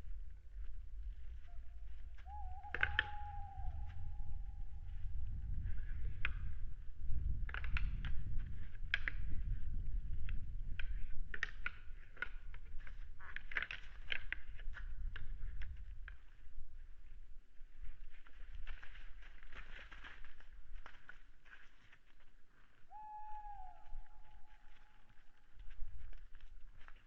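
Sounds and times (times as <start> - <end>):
low wind rumble: 0.0 - 12.9
clicks and crackles: 2.2 - 4.1, 7.2 - 16.4, 18.0 - 22.8, 23.7 - 27.0
owl hooting: 2.2 - 4.6, 22.9 - 25.0.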